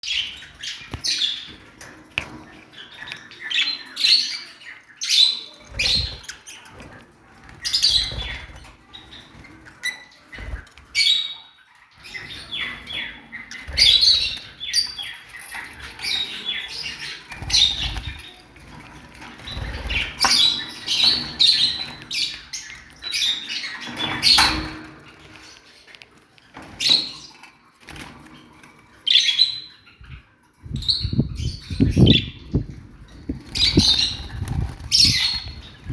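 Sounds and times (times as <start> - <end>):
small birds chirping: 0.0 - 35.9
wings fluttering: 13.6 - 22.2, 31.1 - 35.9.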